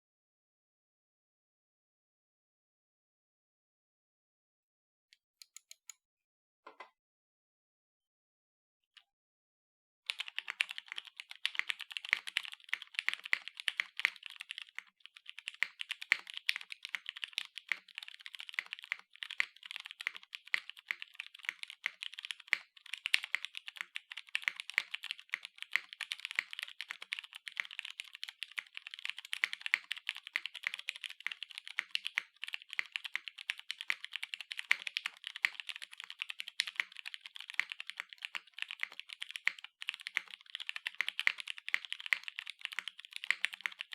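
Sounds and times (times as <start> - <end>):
fast mechanical keyboard typing: 10.1 - 43.9.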